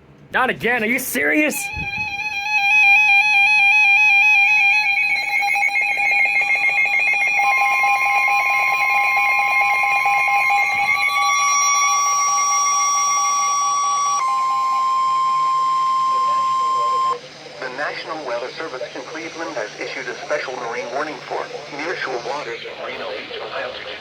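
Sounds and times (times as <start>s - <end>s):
steady single-pitch tone: 1.6s - 22.4s
warbling electronic alarm: 1.6s - 24.0s.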